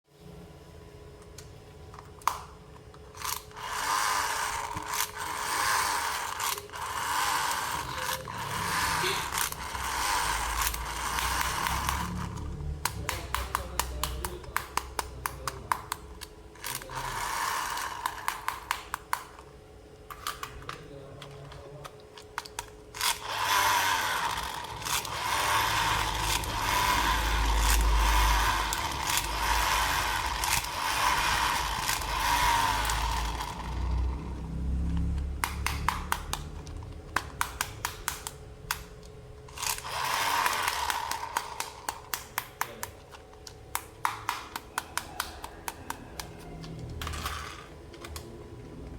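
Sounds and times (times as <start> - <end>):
rapid small plastic clicks: 2.2 - 19.5, 35.0 - 48.3.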